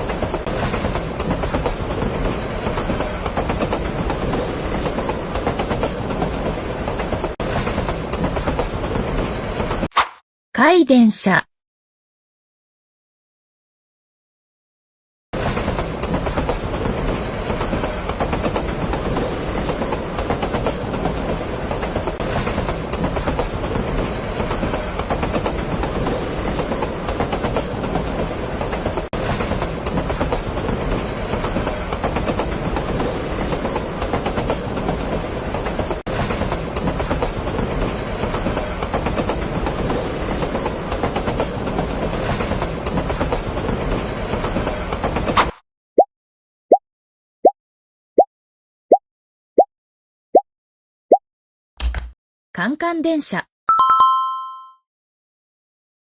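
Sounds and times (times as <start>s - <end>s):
electric train running on rails: 0.0s - 9.8s, 15.4s - 45.4s.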